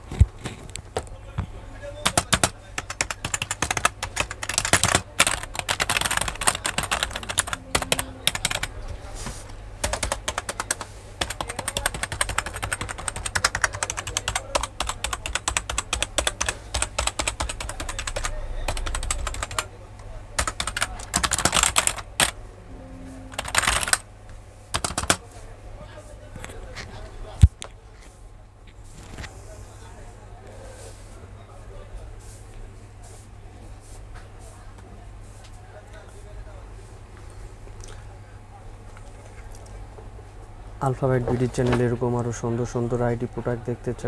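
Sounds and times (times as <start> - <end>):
fast typing on keyboard: 2.0 - 8.7, 9.8 - 19.7, 20.4 - 22.4, 23.3 - 24.0, 24.7 - 25.2.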